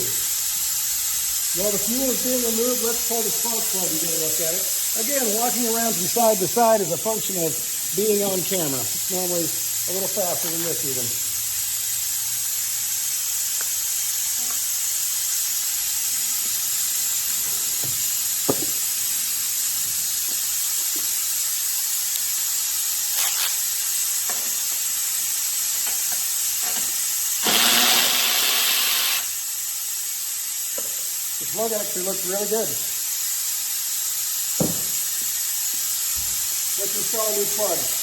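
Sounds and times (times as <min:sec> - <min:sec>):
fuel hissing from tank: 0:00.0 - 0:38.0
tools clicking and knocking: 0:17.4 - 0:18.8.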